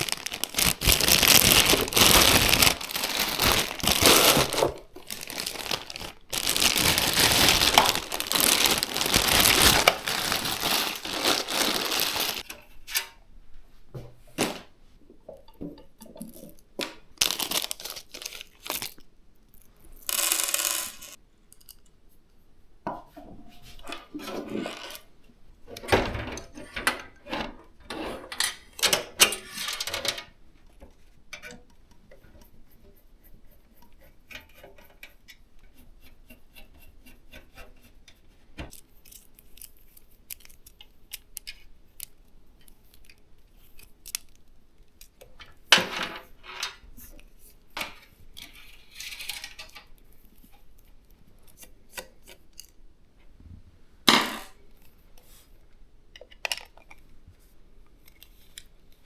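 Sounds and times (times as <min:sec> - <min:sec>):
small clicks and taps of parts: 0:21.5 - 0:22.4, 0:38.1 - 0:45.5.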